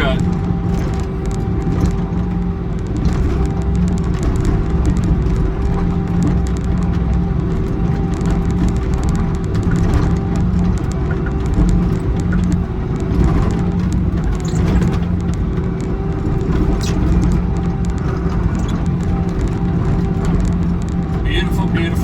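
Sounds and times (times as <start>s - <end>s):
excavator diesel engine running: 0.0s - 0.8s, 17.3s - 22.0s.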